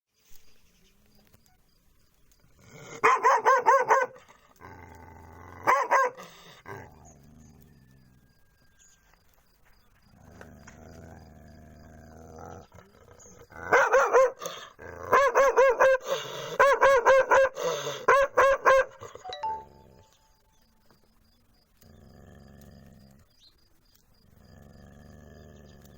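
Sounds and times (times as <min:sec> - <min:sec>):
dog barking: 0:02.9 - 0:04.4, 0:05.6 - 0:06.4, 0:13.6 - 0:19.2.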